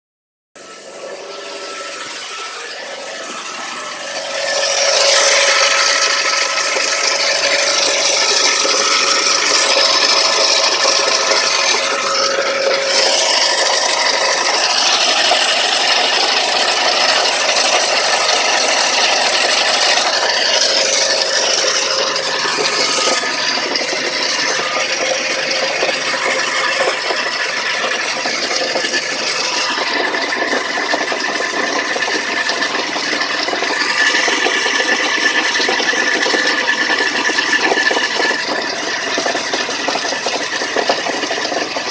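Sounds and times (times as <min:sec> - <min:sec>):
car engine knocking: 0:00.6 - 0:41.9.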